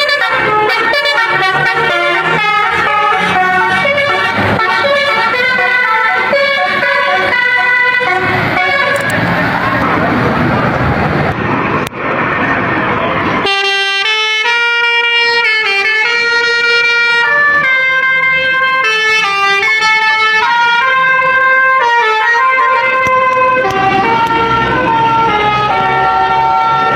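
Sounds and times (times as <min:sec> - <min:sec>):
bus horn playing a tune: 0:00.0 - 0:09.2, 0:13.4 - 0:26.9
traffic rumble: 0:00.0 - 0:26.9.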